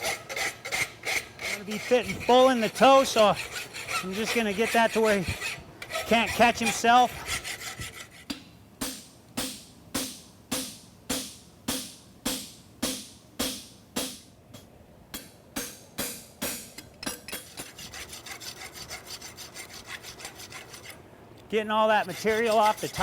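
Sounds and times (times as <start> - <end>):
rasp scraping steel horseshoe: 0.0 - 8.3, 16.5 - 21.0, 21.8 - 23.0.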